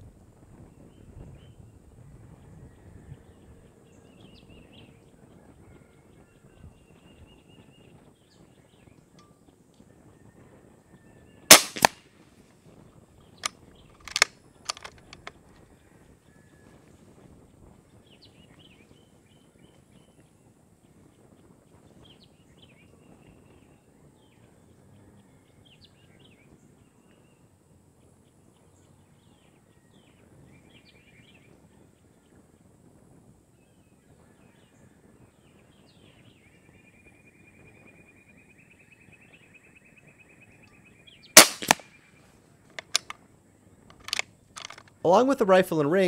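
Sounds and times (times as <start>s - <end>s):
air rifle shot: 11.5s - 12.0s, 14.1s - 15.3s, 41.4s - 41.9s, 42.8s - 43.1s
quick clicks: 11.5s - 12.0s, 14.0s - 15.3s, 41.4s - 41.8s, 42.7s - 43.2s, 43.9s - 45.0s.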